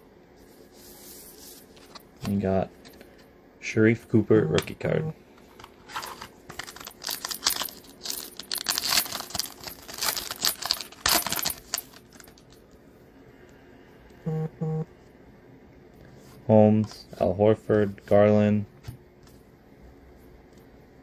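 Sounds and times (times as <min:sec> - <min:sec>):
foil wrapper crinkling and tearing: 0:06.0 - 0:12.3.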